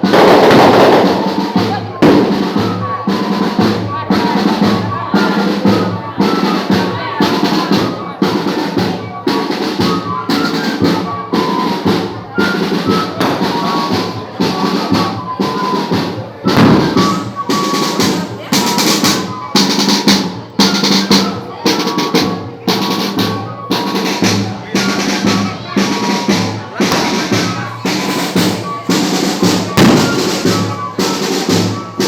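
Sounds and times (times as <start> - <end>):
bass drum and snare beat: 0.0 - 5.8, 7.0 - 32.0
fifes playing melody: 12.6 - 21.1, 24.8 - 32.0.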